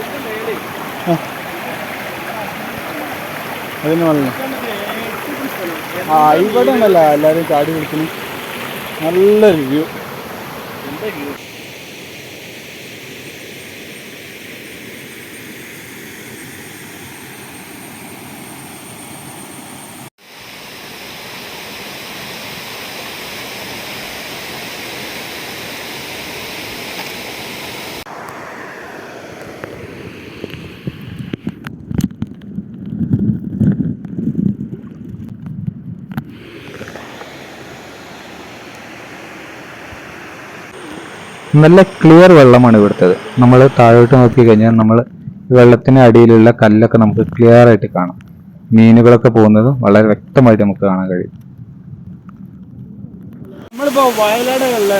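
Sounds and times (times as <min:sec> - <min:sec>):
waterfall and stream rushing: 0:00.0 - 0:31.4, 0:36.3 - 0:44.7, 0:53.5 - 0:54.9.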